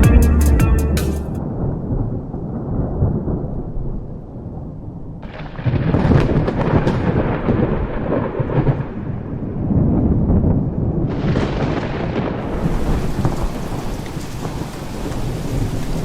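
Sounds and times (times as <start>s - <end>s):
rumbling thunder: 1.4s - 16.0s
crackling thunder crack: 5.2s - 16.0s.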